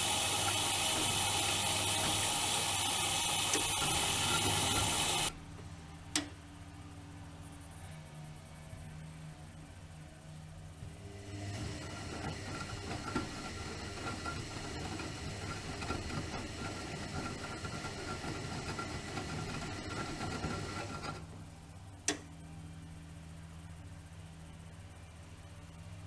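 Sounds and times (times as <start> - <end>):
washing machine motor whining: 0.0 - 5.4, 10.8 - 21.6.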